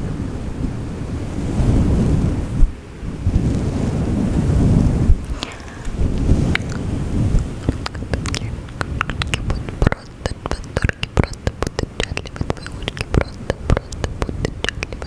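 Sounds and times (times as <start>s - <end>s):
wet mouth clicks and smacks: 5.2s - 15.0s
faint whispering: 5.3s - 15.0s.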